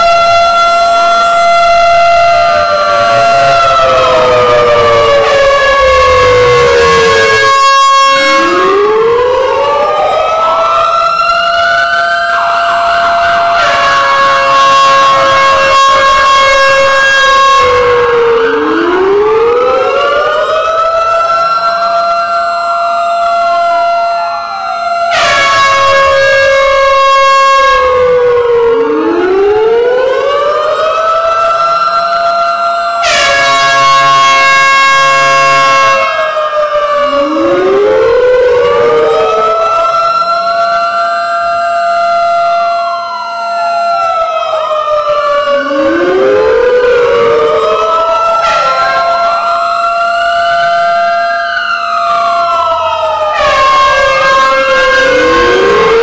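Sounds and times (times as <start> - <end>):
warning sirens wailing: 0.0 - 56.0.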